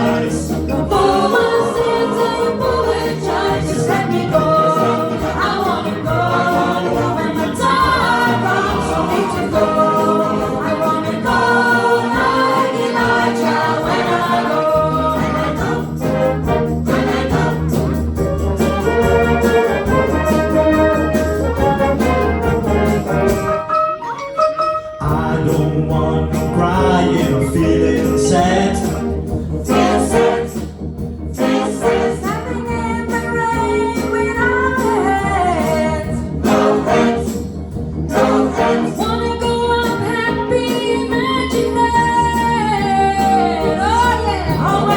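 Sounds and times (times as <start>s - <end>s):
choir singing gospel: 0.0s - 23.8s, 25.0s - 44.9s
instrumental backing: 0.0s - 44.9s.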